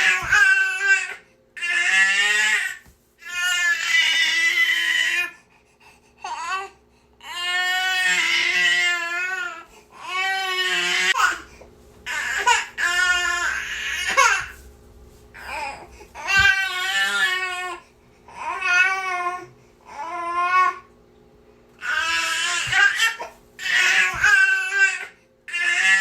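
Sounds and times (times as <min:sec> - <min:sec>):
infant crying: 0:00.0 - 0:05.4, 0:06.2 - 0:11.5, 0:12.1 - 0:14.6, 0:15.4 - 0:20.9, 0:21.8 - 0:26.0
infant breathing: 0:15.3 - 0:18.6.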